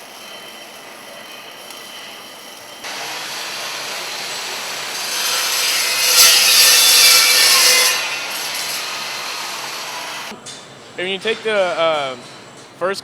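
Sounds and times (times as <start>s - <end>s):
power tool working metal: 2.9s - 10.3s.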